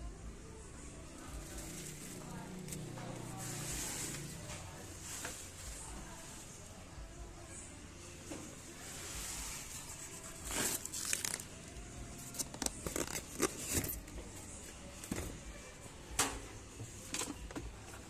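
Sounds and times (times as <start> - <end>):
plastic packaging crinkling: 10.4 - 11.6, 12.2 - 14.0.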